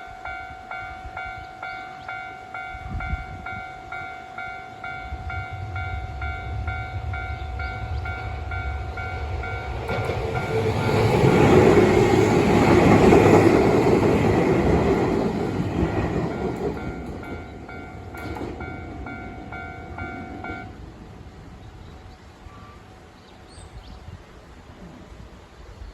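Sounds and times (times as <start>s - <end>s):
train passing: 0.0s - 25.8s
level-crossing bell ringing: 16.1s - 20.8s.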